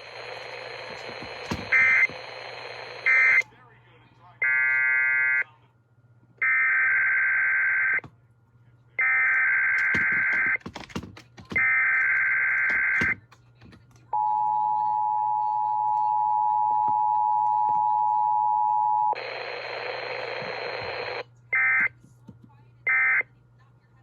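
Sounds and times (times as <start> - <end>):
data burst tones: 0.0 - 3.4.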